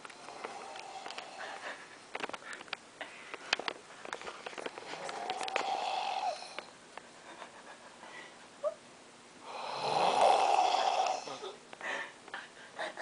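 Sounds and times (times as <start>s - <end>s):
woman snoring loudly: 0.2s - 1.4s, 4.9s - 6.7s, 9.4s - 11.4s.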